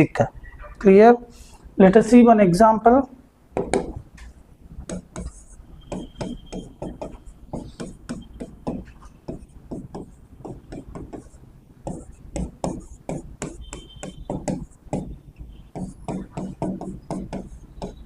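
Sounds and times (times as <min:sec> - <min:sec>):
writing on a board: 0:03.6 - 0:18.0.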